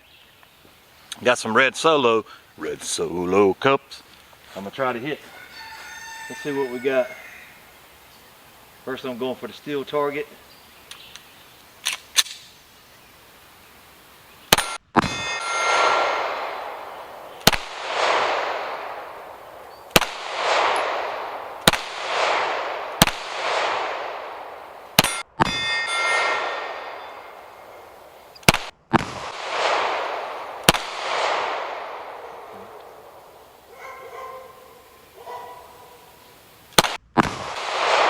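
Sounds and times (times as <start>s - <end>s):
pistol shots: 14.5s - 33.2s, 36.8s - 38.0s
steel target ringing clang: 14.6s - 16.9s, 25.0s - 28.0s.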